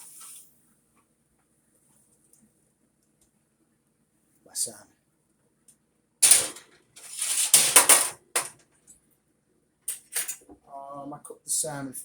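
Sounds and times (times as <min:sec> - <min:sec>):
rustling and scraping of a dish: 0:06.2 - 0:09.0.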